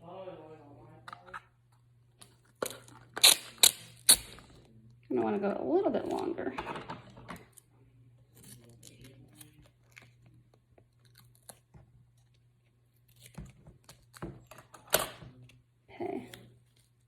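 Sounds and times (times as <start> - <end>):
duct tape ripping: 3.2 - 4.4.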